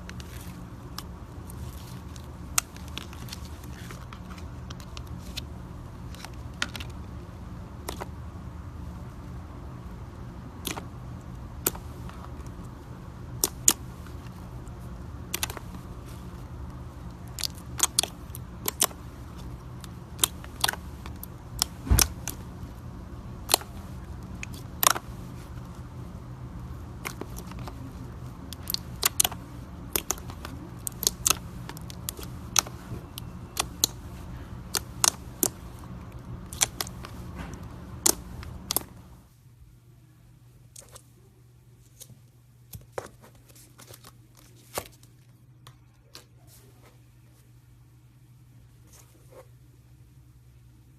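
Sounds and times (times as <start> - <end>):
steady low hum: 0.0 - 50.9
sharp clicks and snaps: 28.5 - 34.0, 34.7 - 38.9.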